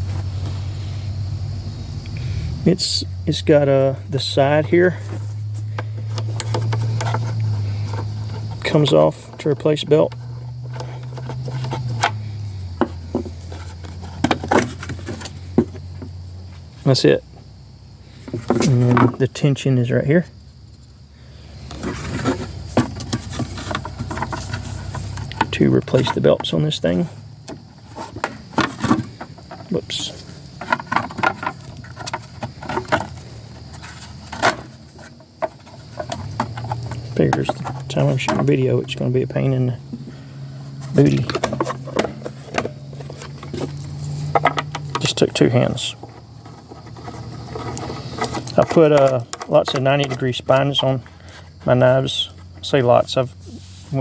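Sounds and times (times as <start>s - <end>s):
belt sander parts clacking: 3.6s - 16.1s, 18.2s - 20.0s, 21.6s - 53.3s.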